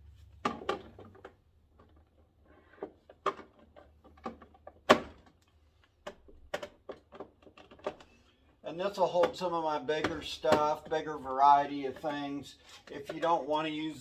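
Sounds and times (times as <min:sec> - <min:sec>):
hard plastic clacks and knocks: 0:00.4 - 0:08.1.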